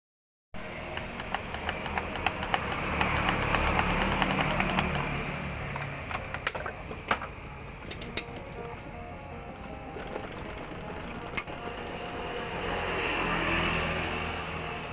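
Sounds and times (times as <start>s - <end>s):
claw machine motor hum: 0.6s - 14.9s
sharp clicks: 0.8s - 7.2s, 7.8s - 12.6s.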